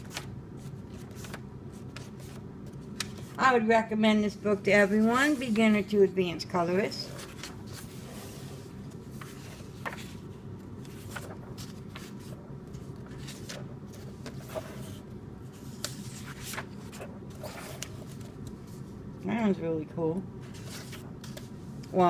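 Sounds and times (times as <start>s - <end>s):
paper pages turning: 0.0s - 3.4s, 7.0s - 18.8s, 20.5s - 22.0s
low room hum: 0.0s - 22.0s.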